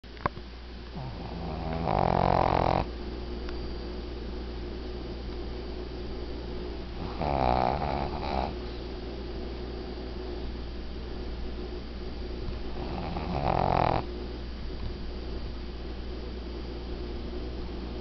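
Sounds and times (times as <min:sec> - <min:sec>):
dog snoring: 0:00.9 - 0:02.9, 0:07.0 - 0:08.6, 0:12.7 - 0:14.1.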